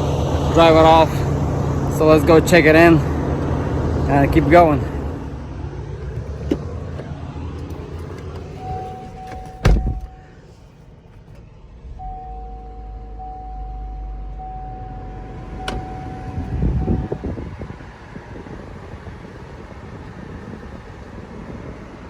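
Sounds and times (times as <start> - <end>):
vehicle engine idling: 0.0 - 22.0
loud thump: 8.8 - 10.2
high electronic tone: 11.9 - 17.2.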